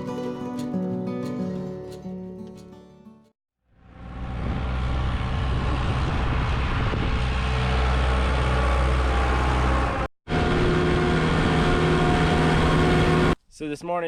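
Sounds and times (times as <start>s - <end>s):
diesel tractor engine droning: 3.7s - 13.4s.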